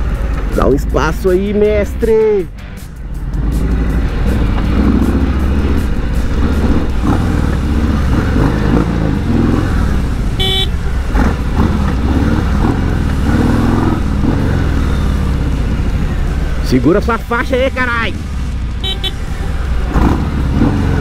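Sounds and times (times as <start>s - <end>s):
motorcycle engine running: 2.7s - 21.0s
vehicle horn toot: 10.4s - 10.9s, 18.8s - 19.4s.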